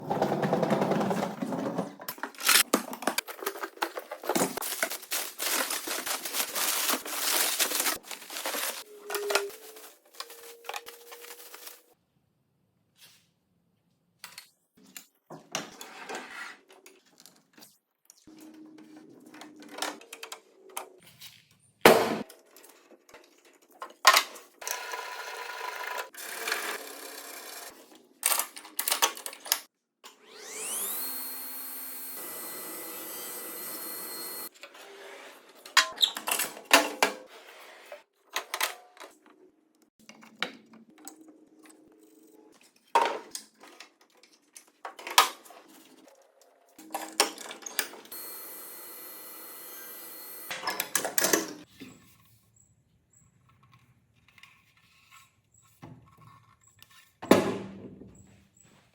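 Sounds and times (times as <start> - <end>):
power tool whining: 30.1 - 34.5, 48.1 - 50.5.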